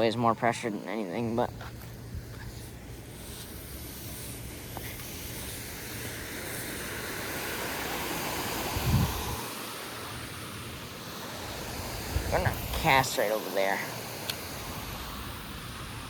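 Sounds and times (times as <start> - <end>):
water rushing through spillway: 3.7 - 16.0.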